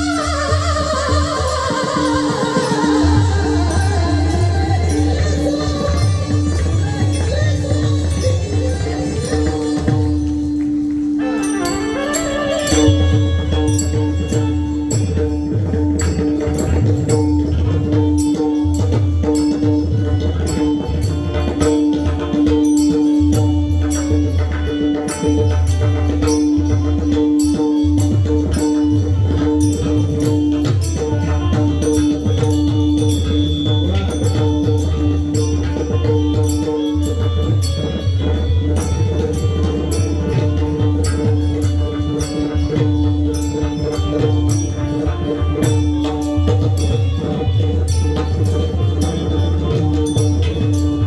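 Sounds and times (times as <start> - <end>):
ringing metal percussion: 0.0 - 51.0
held instrumental notes: 6.2 - 51.0
held melody notes: 10.5 - 15.8.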